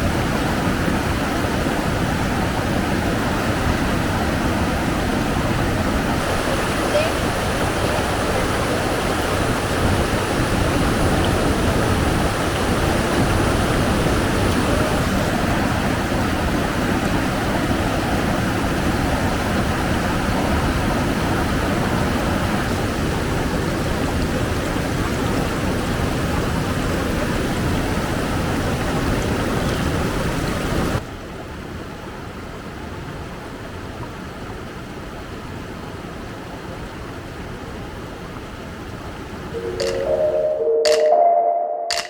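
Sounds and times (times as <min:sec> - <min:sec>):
low wind rumble on microphone: 0:00.0 - 0:31.0.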